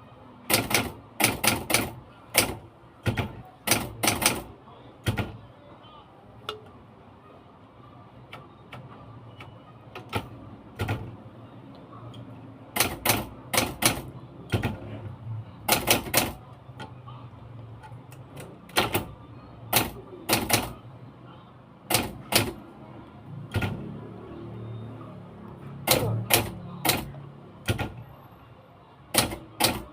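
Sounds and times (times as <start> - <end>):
typewriter keys clacking: 0.5 - 4.5, 12.8 - 14.7, 15.7 - 16.4, 19.7 - 20.7, 25.9 - 27.1, 29.1 - 29.9.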